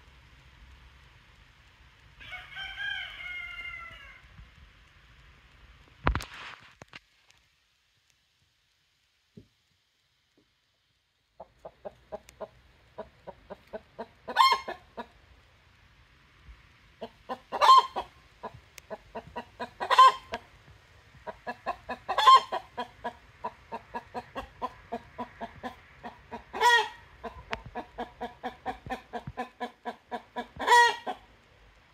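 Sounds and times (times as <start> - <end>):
chicken clucking: 11.4 - 15.2, 17.0 - 20.5, 21.2 - 31.3
chicken squawking: 13.5 - 15.1, 17.0 - 18.1, 18.9 - 20.4, 21.4 - 31.2.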